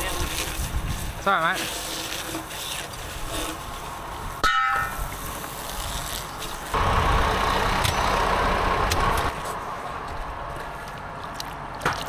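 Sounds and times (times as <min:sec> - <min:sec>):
heavy truck engine running: 0:06.6 - 0:10.1.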